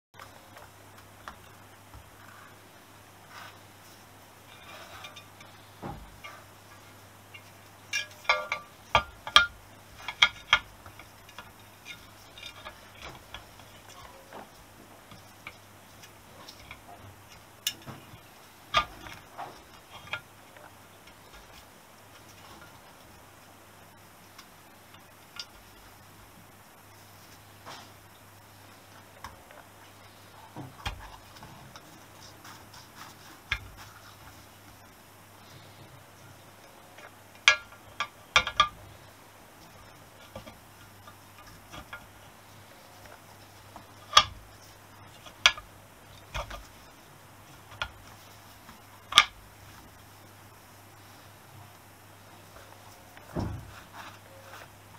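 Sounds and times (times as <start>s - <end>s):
metal parts clicking and knocking: 7.3s - 21.6s, 36.4s - 39.0s.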